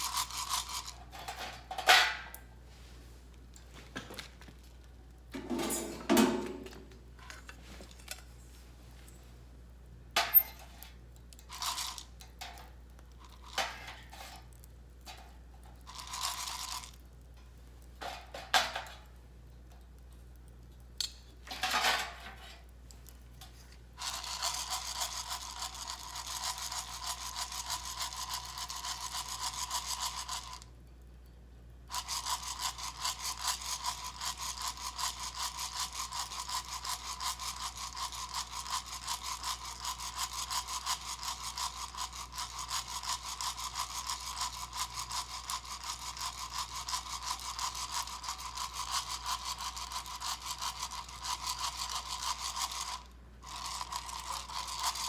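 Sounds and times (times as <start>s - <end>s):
coffee beans rattling in metal pan: 0.0s - 2.4s, 10.2s - 17.1s, 23.4s - 30.6s, 31.9s - 55.0s.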